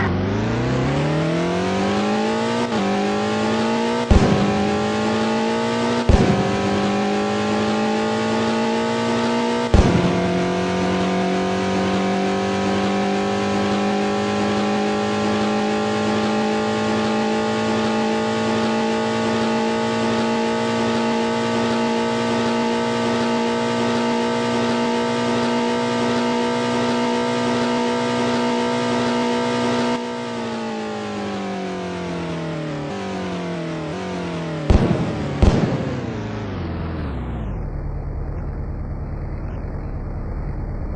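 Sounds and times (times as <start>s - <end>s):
car engine accelerating hard: 0.0s - 40.9s.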